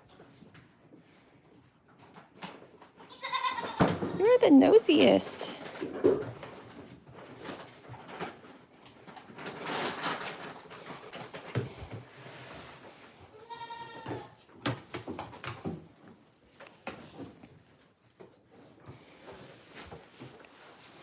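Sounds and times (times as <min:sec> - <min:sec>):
goat bleating: 0:03.0 - 0:03.9, 0:13.3 - 0:14.4
rustling: 0:03.5 - 0:14.5, 0:15.3 - 0:21.0.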